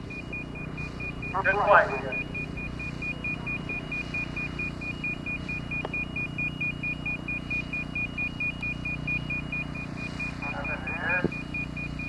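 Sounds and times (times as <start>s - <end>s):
low engine-like hum: 0.0s - 12.0s
rapid electronic beeping: 0.0s - 12.0s.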